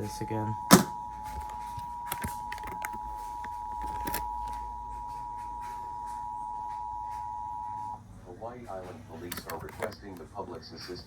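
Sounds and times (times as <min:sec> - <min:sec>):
two-tone alert signal: 0:00.0 - 0:08.0.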